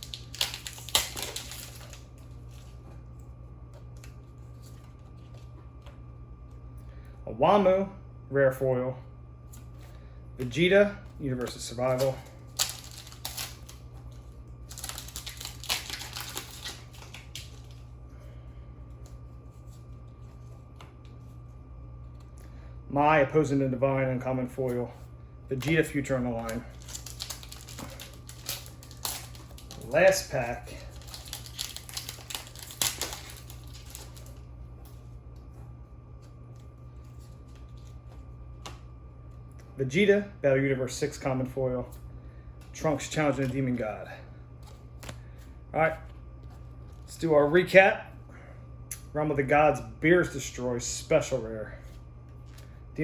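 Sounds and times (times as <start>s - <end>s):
foil pack crinkling and tearing: 0.0s - 2.8s, 11.4s - 17.9s, 25.5s - 34.5s
low steady hum: 0.0s - 53.0s.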